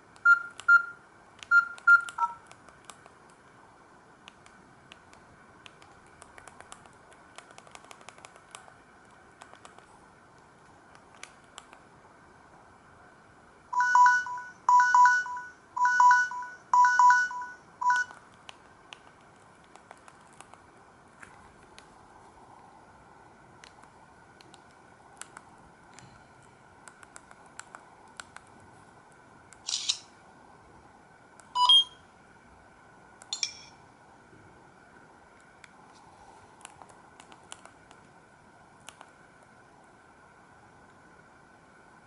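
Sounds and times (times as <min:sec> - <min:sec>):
two-tone phone ringtone: 0:13.8 - 0:18.1
electronic beeps: 0:31.6 - 0:32.0.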